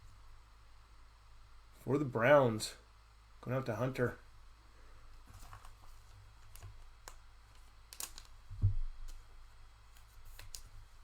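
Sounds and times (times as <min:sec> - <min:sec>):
cards clicking and snapping: 0:07.9 - 0:08.4, 0:10.0 - 0:10.7.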